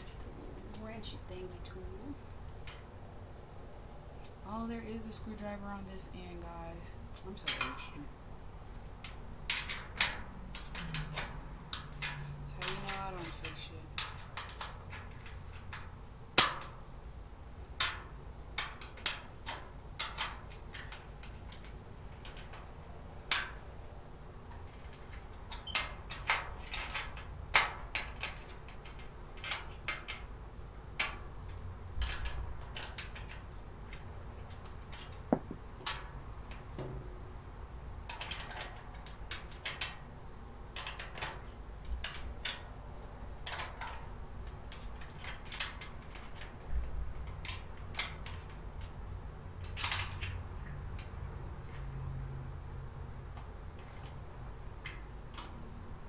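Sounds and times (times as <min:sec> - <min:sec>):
light rattling and scraping: 0:00.0 - 0:03.1, 0:07.2 - 0:16.8, 0:17.6 - 0:51.9
hand tool clicks and knocks: 0:31.0 - 0:37.3.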